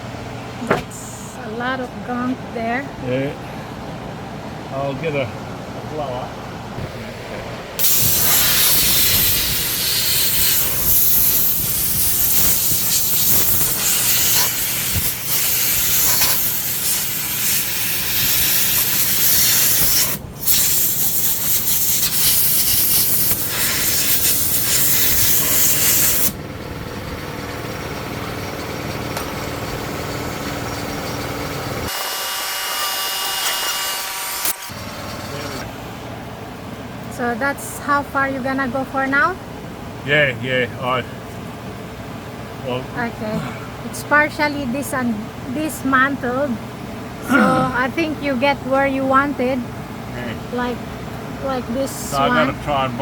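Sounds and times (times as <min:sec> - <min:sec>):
air blower hissing: 0:06.8 - 0:26.4
steady hum: 0:34.7 - 0:53.0.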